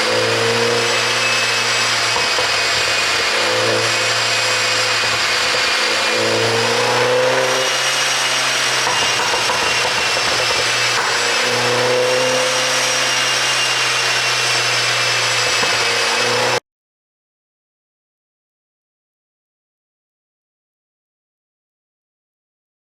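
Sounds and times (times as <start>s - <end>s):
car engine running: 0.0s - 16.6s.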